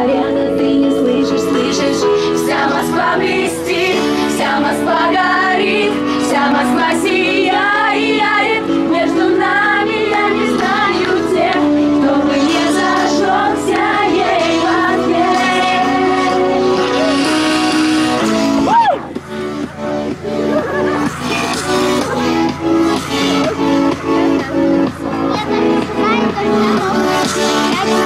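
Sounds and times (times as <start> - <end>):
pop music with female vocal: 0.0 - 19.3, 20.4 - 28.0.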